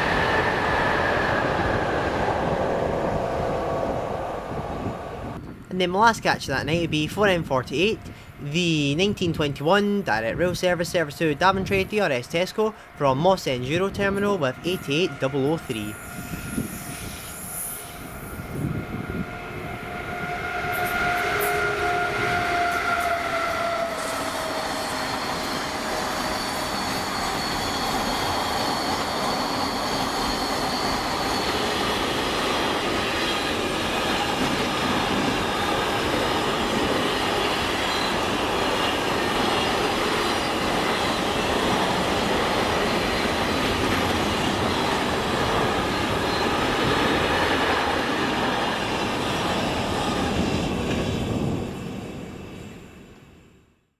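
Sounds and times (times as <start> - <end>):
locomotive passing with whine: 0.0 - 5.7, 13.7 - 53.3
wheel squeal: 23.2 - 32.2.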